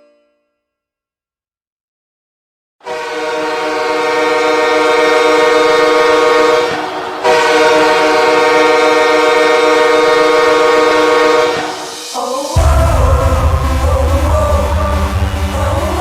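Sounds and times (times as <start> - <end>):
goal horn blast: 2.8 - 11.9, 12.6 - 16.0.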